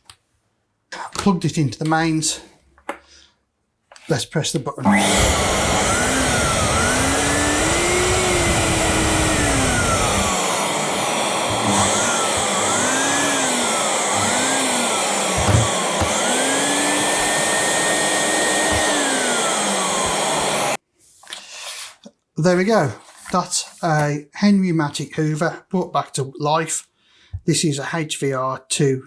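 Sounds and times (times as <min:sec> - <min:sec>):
vacuum cleaner motor running: 0:04.8 - 0:20.8.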